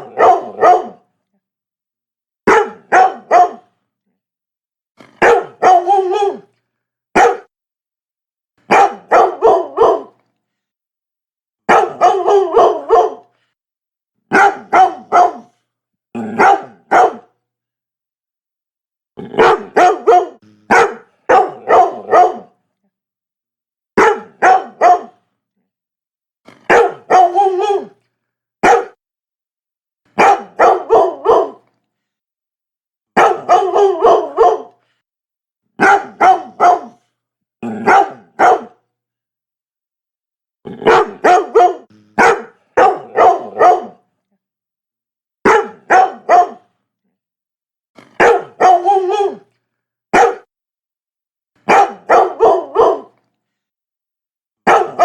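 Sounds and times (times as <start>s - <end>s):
dog barking: 0.0s - 1.0s, 2.5s - 3.7s, 5.1s - 6.5s, 7.2s - 7.5s, 8.7s - 10.2s, 11.7s - 13.3s, 14.3s - 15.6s, 16.3s - 17.4s, 19.3s - 22.6s, 24.0s - 25.2s, 26.6s - 28.0s, 28.6s - 29.0s, 30.2s - 31.6s, 33.2s - 34.8s, 35.8s - 37.0s, 37.6s - 38.8s, 40.8s - 44.0s, 45.4s - 46.7s, 48.1s - 49.4s, 50.1s - 50.5s, 51.6s - 53.2s, 54.6s - 55.0s.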